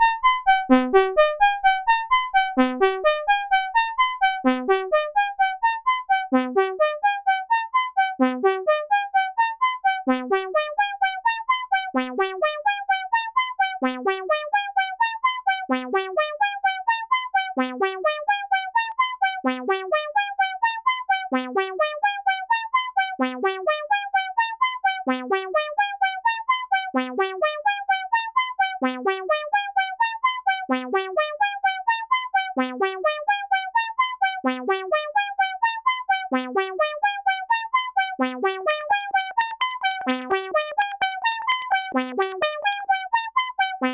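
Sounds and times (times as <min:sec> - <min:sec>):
synthesizer brassy arpeggio: 0:00.0 - 0:07.4, 0:36.5 - 0:43.9.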